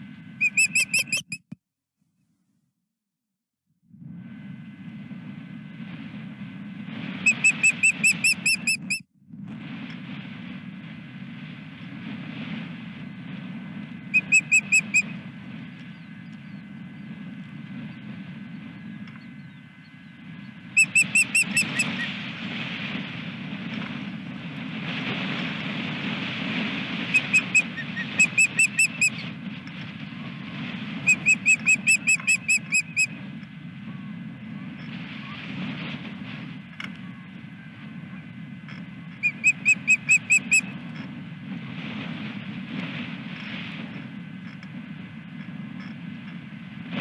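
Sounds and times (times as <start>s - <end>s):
wind on microphone: 0.0s - 1.5s, 3.9s - 47.0s
osprey whistled chirps: 0.4s - 1.6s, 7.2s - 9.0s, 14.1s - 15.2s, 20.7s - 22.1s, 27.1s - 29.3s, 31.0s - 33.2s, 39.2s - 40.8s.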